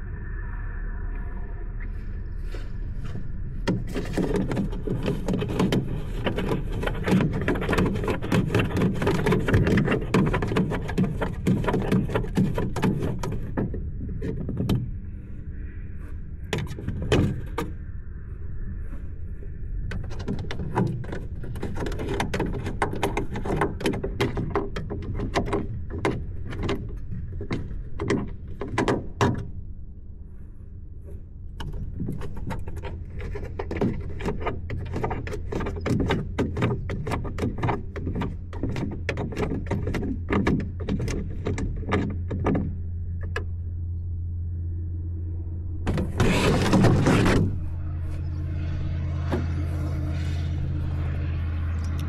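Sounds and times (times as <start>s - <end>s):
rattling clicks and knocks: 3.6s - 15.0s, 19.9s - 29.6s, 31.6s - 43.7s, 45.8s - 51.1s
model airplane motor hum: 31.6s - 52.0s.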